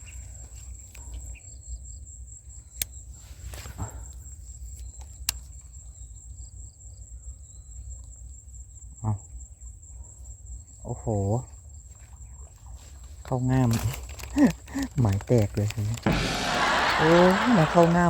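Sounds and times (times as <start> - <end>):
low rumble: 16.1 - 18.0.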